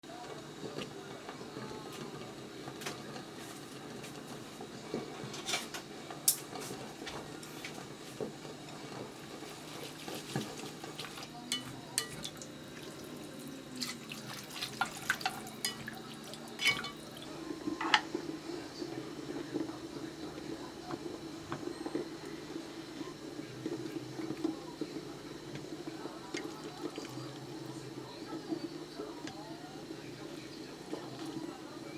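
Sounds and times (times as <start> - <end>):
dishes and utensils clinking: 10.3 - 12.4, 13.8 - 17.2.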